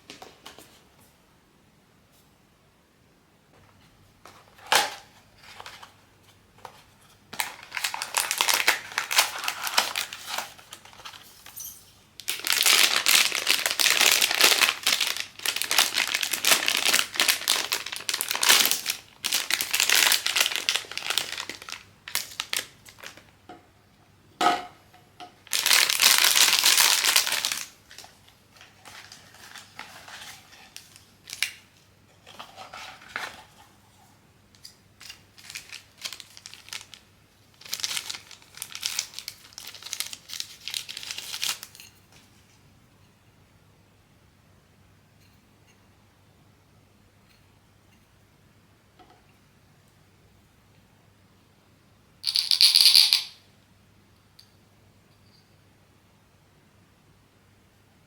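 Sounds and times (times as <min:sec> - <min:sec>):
packaging crinkling: 0:07.3 - 0:11.6, 0:12.2 - 0:23.3, 0:25.4 - 0:31.6, 0:35.0 - 0:41.8.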